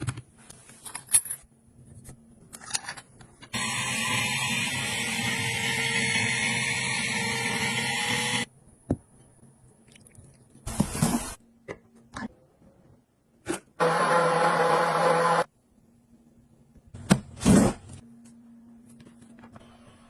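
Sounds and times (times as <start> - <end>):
gadget whirring: 3.6 - 8.5.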